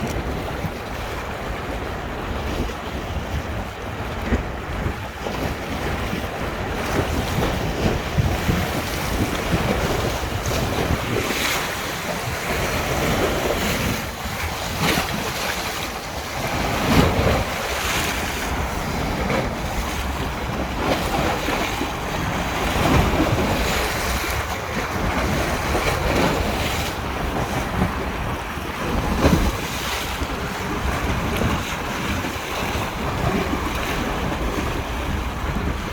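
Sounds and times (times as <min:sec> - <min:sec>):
river waves splashing: 0:00.0 - 0:35.9
wind buffeting microphone: 0:00.0 - 0:35.9.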